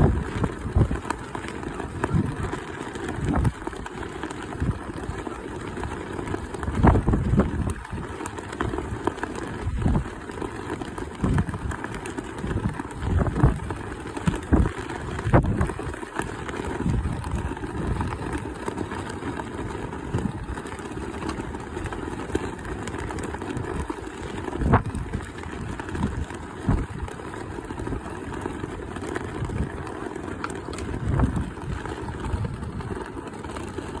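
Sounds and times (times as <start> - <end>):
wind gusts on microphone: 0.0 - 1.0, 3.2 - 3.6, 6.6 - 8.0, 11.2 - 11.8, 12.4 - 15.9, 24.5 - 27.1, 30.9 - 33.0.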